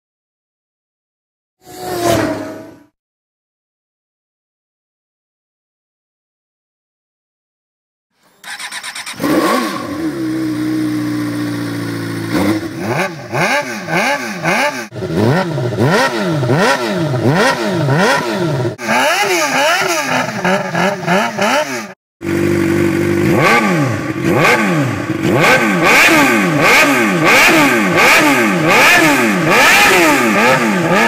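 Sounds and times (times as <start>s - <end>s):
motorcycle engine idling and revving: 8.2s - 31.0s.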